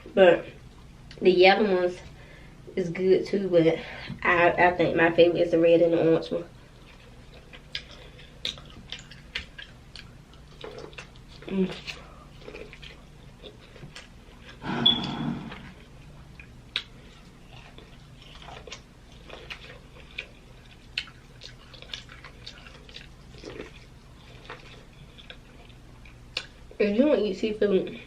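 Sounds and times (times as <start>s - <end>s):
chewing and lip smacks: 6.6s - 26.8s.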